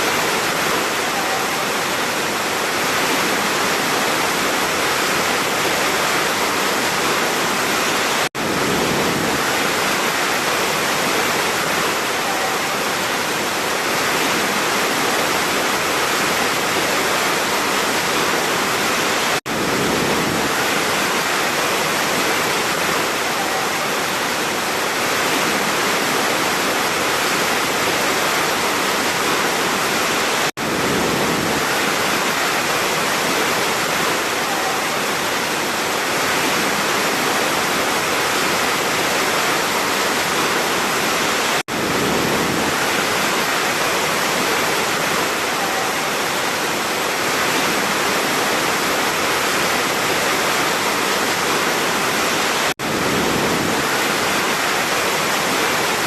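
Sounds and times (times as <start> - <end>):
waterfall roaring: 0.0 - 56.0.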